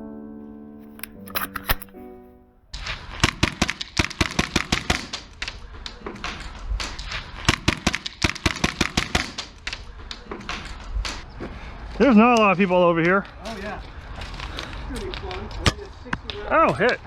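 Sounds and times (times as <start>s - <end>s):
airsoft guns firing: 2.9s - 5.6s, 6.7s - 11.2s.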